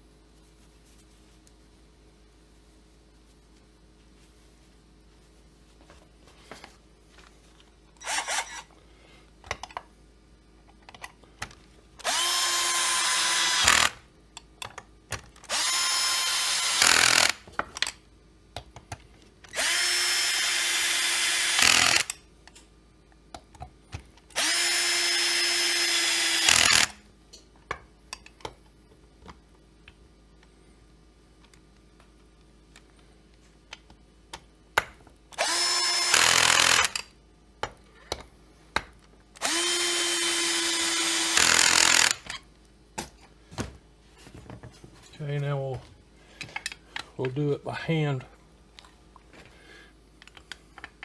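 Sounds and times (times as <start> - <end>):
cordless drill whining: 8.0 - 8.7, 12.0 - 14.0, 15.4 - 17.4, 19.5 - 22.1, 24.4 - 27.0, 35.4 - 37.0, 39.4 - 42.4.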